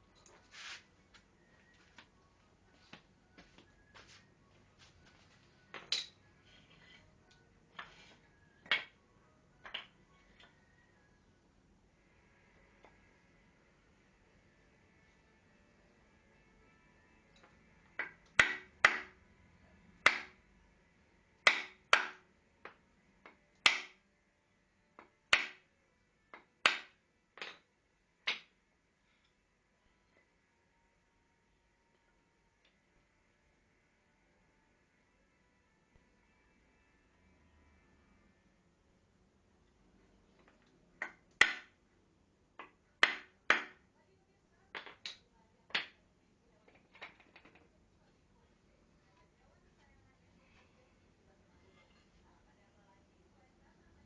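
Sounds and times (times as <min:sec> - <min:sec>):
sharp knocks of wooden parts: 0:21.4 - 0:24.0.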